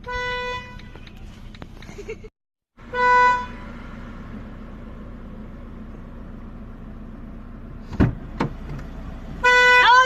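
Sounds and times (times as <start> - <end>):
car engine idling: 2.8 - 10.0.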